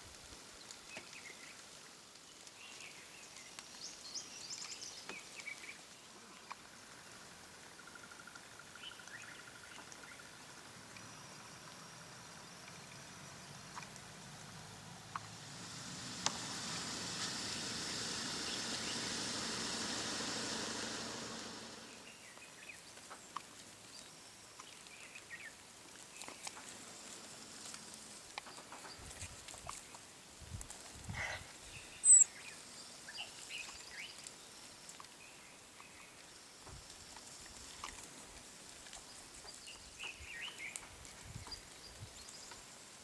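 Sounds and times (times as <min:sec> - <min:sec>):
faint chirps and ticks: 0:00.4 - 0:19.6, 0:20.8 - 0:30.9, 0:32.0 - 0:43.0
vehicle engine humming: 0:13.1 - 0:22.1
broad hiss: 0:13.5 - 0:22.6.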